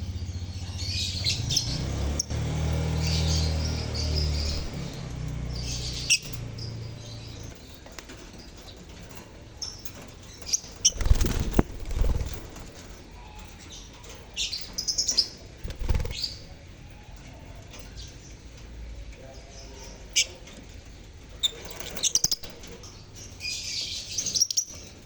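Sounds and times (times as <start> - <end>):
birds chirping: 0.0 - 25.0
wing flapping: 10.0 - 13.2, 15.1 - 16.7.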